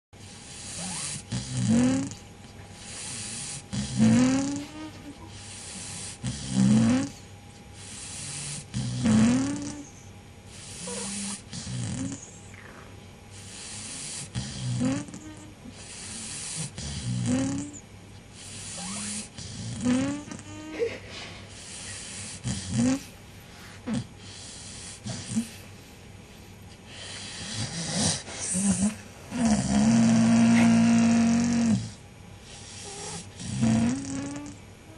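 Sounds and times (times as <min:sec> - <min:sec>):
dog snoring: 0:00.2 - 0:25.8, 0:26.9 - 0:34.9
hissing breath: 0:20.8 - 0:25.8.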